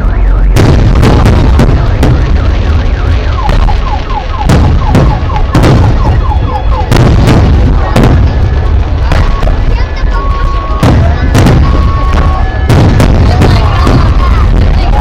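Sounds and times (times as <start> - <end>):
warbling firework whistles: 0.0 - 8.0, 9.0 - 15.0
fireworks bangs: 0.0 - 15.0.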